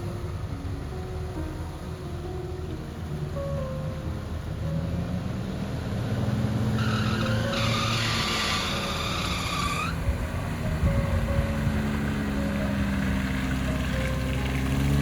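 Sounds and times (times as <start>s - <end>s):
vehicle engine running: 0.0s - 15.0s
loud high squeal: 6.8s - 10.0s.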